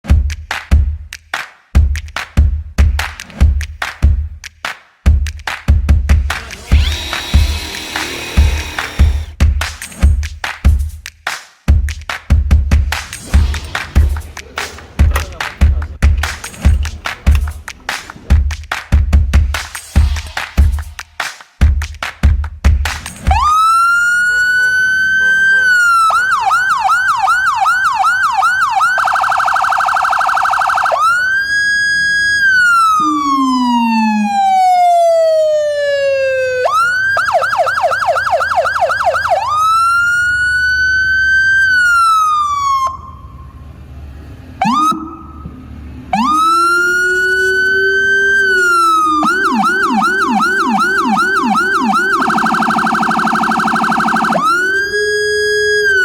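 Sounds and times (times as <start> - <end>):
electronic siren cycling tones: 6.7 - 9.3, 23.3 - 43.5, 44.6 - 56.0
low-tone siren: 23.3 - 43.6, 44.6 - 56.0.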